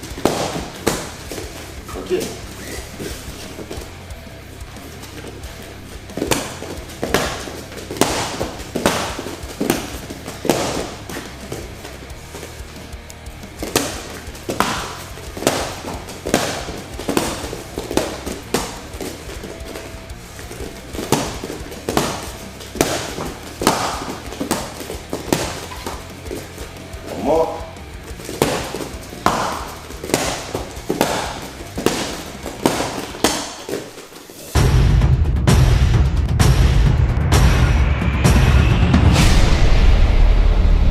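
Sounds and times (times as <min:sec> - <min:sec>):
strikes smacking on pads: 0:00.0 - 0:01.6, 0:06.2 - 0:11.9, 0:12.6 - 0:20.0, 0:20.6 - 0:26.8, 0:28.2 - 0:33.8
martial arts punches and kicks: 0:00.0 - 0:36.9.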